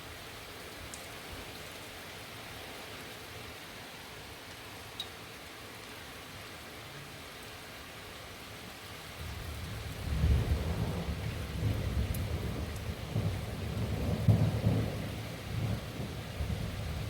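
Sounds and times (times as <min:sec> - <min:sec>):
steady rain: 0:00.0 - 0:17.0
thunder rumbling: 0:09.2 - 0:17.0.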